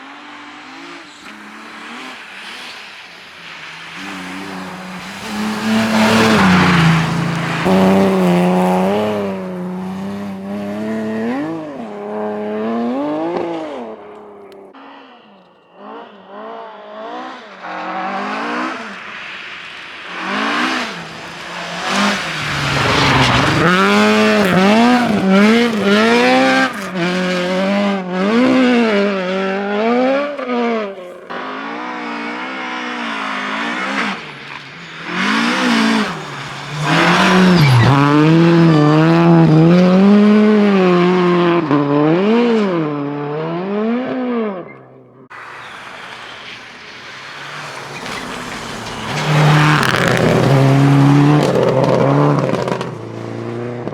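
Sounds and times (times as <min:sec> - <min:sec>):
rally car engines revving: 0:00.0 - 0:53.9.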